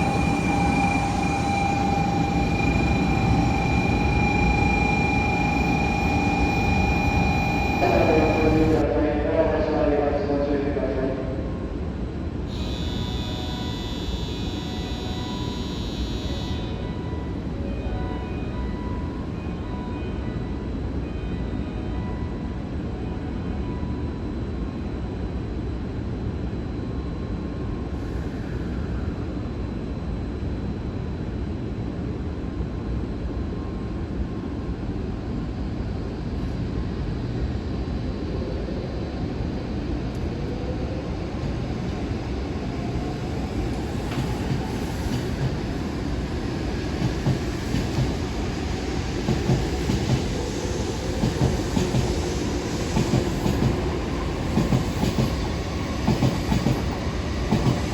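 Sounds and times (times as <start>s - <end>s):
train motor whine rising: 0.0s - 8.8s, 12.5s - 16.8s
train low rumble: 0.0s - 57.9s
train wheel clatter: 46.9s - 48.2s, 49.2s - 50.4s, 51.2s - 57.9s.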